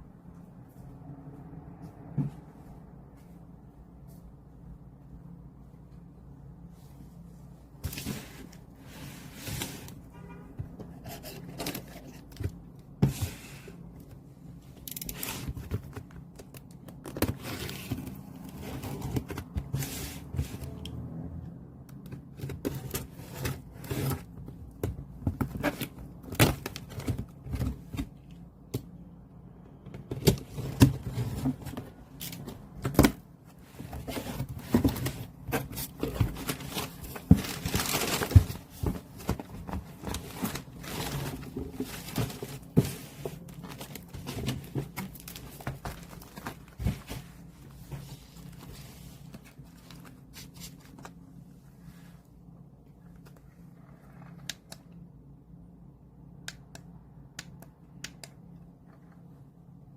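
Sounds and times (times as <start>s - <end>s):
packaging rustling and tearing: 33.8s - 47.3s.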